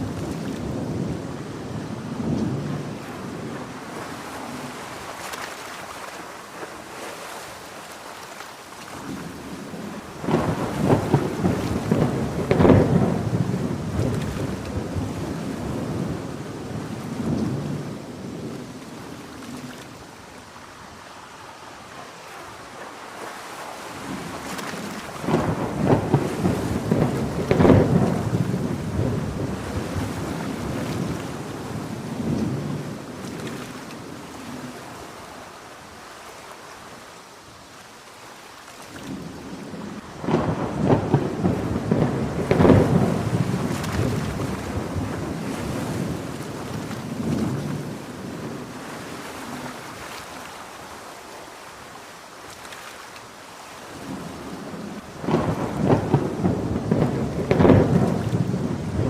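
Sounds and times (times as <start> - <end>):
heavy rain: 0.0 - 59.0
thunder rolling: 9.3 - 18.8, 24.0 - 33.2, 39.2 - 48.7, 54.0 - 59.0.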